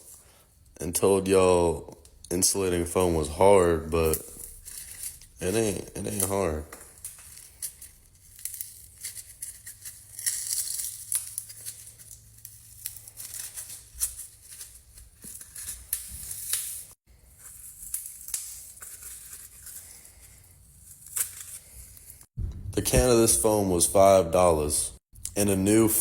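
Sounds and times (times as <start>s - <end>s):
hands tearing crinkling foam: 4.0s - 20.2s.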